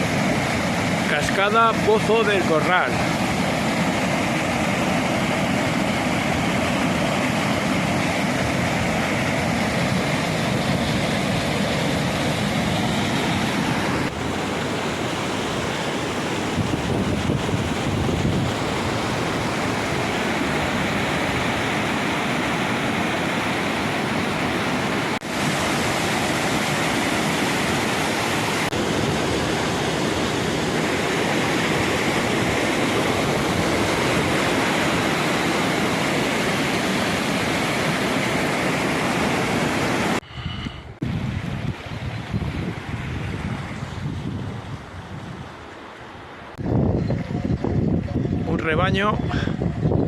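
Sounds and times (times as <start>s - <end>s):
waterfall roaring: 0.0s - 40.2s
wind noise on microphone: 14.0s - 25.2s, 40.2s - 45.7s, 46.6s - 50.0s.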